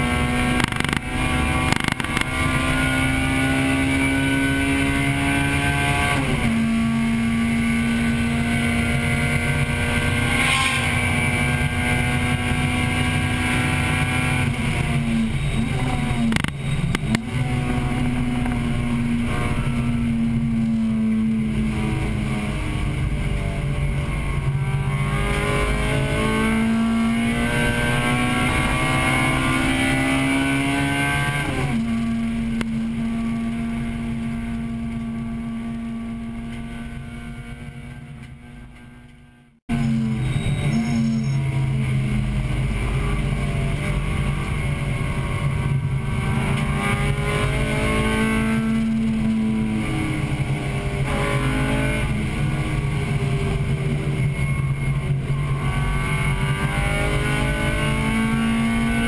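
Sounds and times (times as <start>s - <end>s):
car engine revving: 0.0s - 59.0s
road and wind noise: 0.0s - 59.0s.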